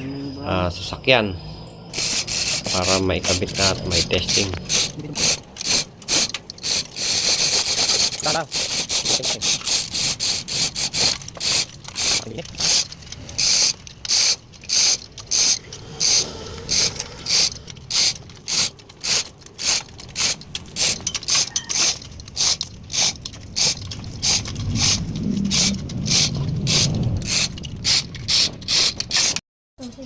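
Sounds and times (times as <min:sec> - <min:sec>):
ratchet wrench clicking: 0:01.9 - 0:29.4
low rumble: 0:12.4 - 0:18.6, 0:23.8 - 0:27.4.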